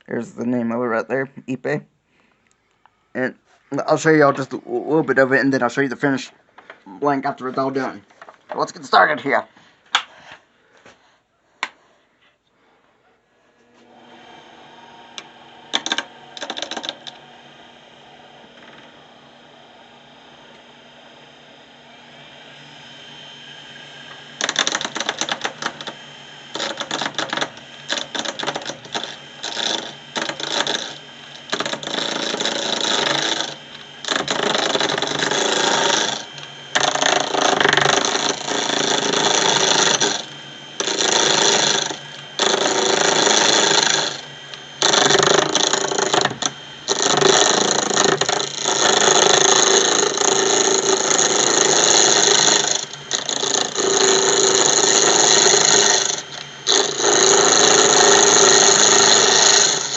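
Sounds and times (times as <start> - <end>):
lathe tool scraping wood: 3.7 - 9.5, 13.7 - 59.9
lathe humming: 13.6 - 59.9.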